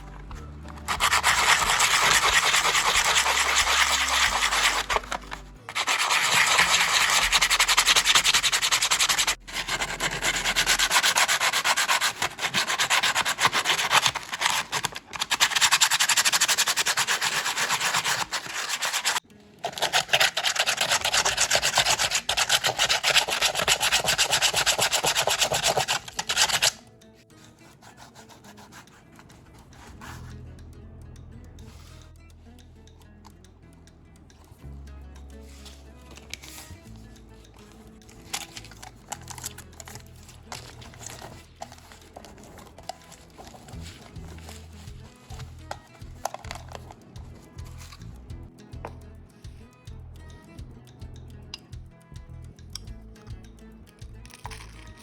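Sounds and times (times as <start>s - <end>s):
abrasive rubbing: 0.0s - 30.5s.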